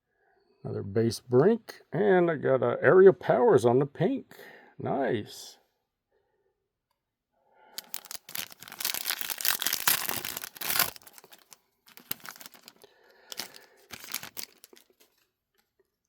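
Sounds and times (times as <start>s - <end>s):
cards being handled: 7.8s - 15.3s
wrapper ripping and crinkling: 7.8s - 15.3s.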